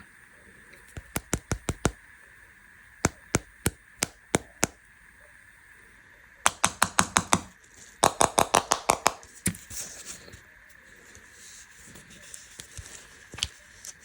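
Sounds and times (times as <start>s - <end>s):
tapping on candy packaging: 1.0s - 2.0s, 3.1s - 4.8s, 6.5s - 9.3s.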